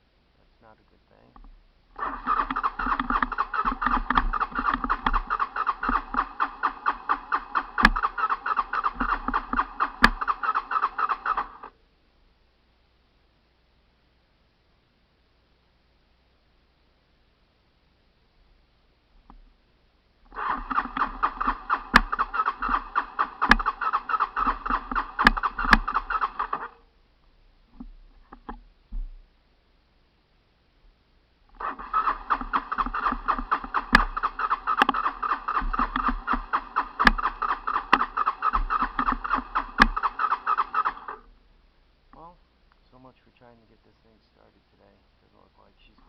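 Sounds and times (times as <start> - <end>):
sharp clicks: 1.4 - 11.7, 20.3 - 26.8, 31.5 - 41.3
engine cranking without catching: 2.0 - 11.7, 20.3 - 26.8, 31.5 - 41.3.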